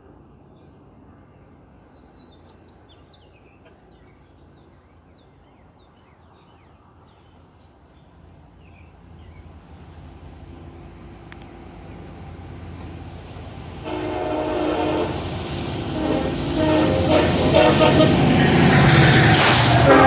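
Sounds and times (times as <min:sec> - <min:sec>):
freight train rumble: 0:08.2 - 0:20.0.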